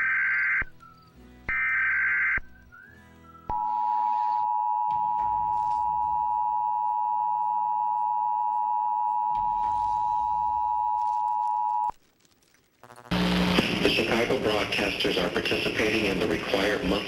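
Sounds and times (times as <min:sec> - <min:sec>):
digital data burst: 0:12.8 - 0:14.1.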